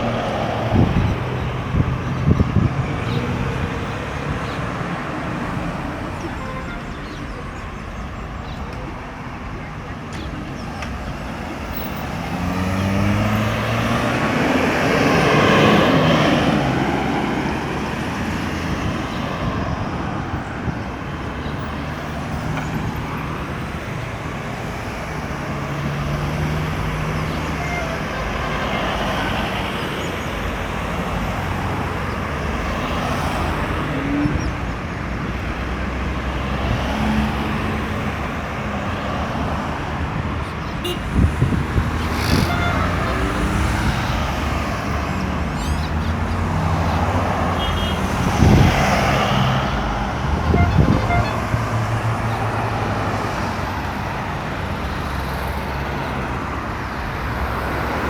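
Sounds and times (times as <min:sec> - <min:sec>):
road traffic passing: 0:00.0 - 0:58.0
vehicle passing close: 0:11.6 - 0:18.9.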